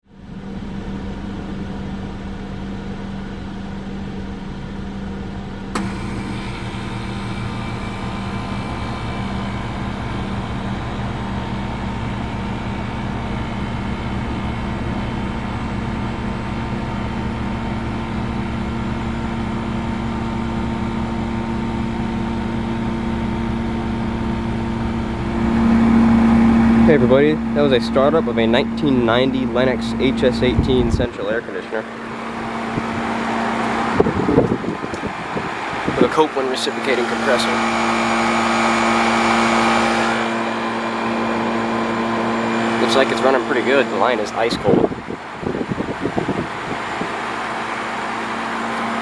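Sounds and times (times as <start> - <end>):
air conditioner humming: 0.1 - 49.0
click: 5.7 - 6.0.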